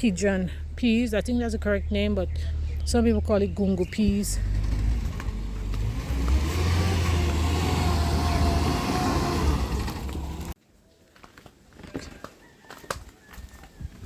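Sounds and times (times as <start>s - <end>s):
vehicle engine running: 0.0s - 10.6s.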